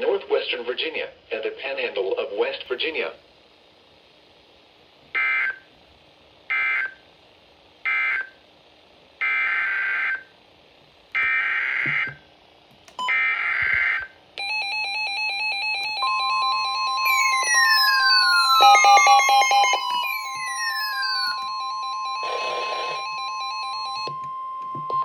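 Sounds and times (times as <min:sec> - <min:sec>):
electronic alert tone pattern: 0:15.2 - 0:24.2
buzzing digital data tones: 0:15.8 - 0:24.1.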